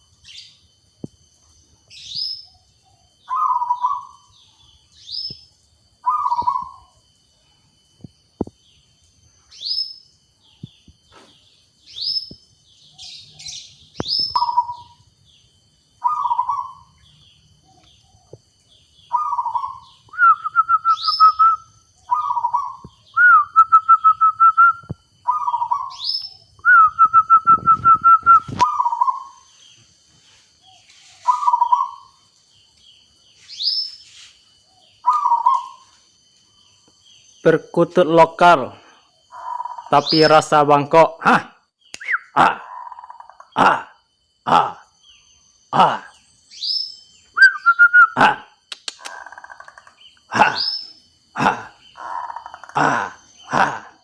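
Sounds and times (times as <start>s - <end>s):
dove cooing: 6.1s - 6.9s, 30.7s - 32.1s, 39.3s - 40.0s, 51.4s - 54.0s
high rising chirps: 13.1s - 15.2s, 18.9s - 37.6s.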